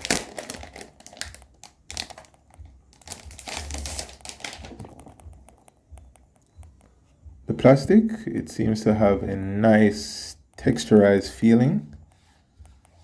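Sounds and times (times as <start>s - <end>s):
plastic wrap peeled and crinkled: 0.0s - 5.6s.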